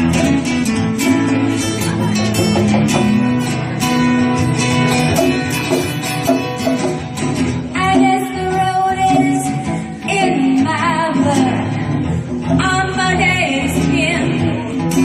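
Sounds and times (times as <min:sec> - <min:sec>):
guitar accompaniment: 0:00.0 - 0:15.0
woman singing: 0:07.7 - 0:15.0.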